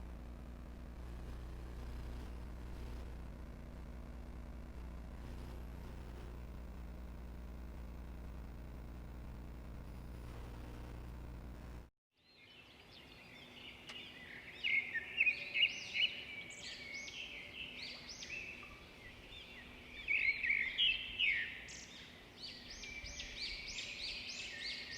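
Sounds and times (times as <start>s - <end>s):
cage birds chirping and twittering: 12.4s - 24.9s.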